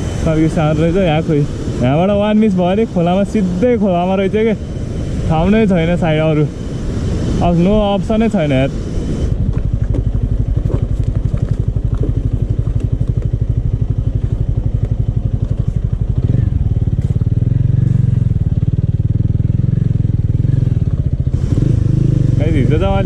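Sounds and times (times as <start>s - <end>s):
scooter engine running: 0.0s - 23.0s.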